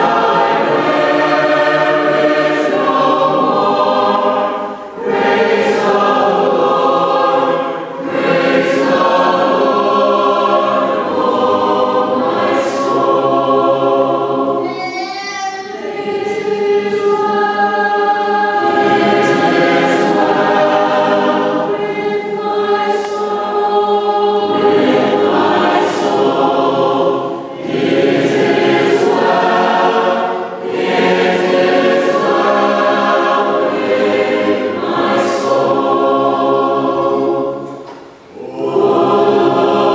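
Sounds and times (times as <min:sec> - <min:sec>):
choir singing: 0:00.0 - 0:39.9
singers breathing: 0:04.6 - 0:05.0.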